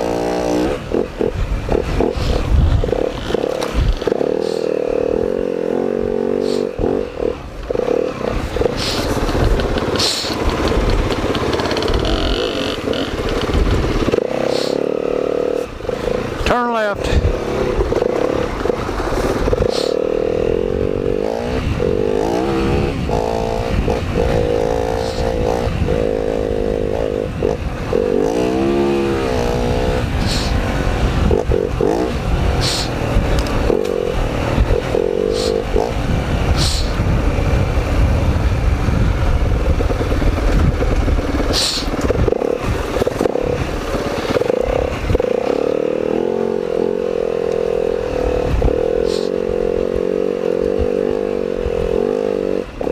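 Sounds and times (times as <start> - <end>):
dirt bike engine revving: 0.0 - 52.9.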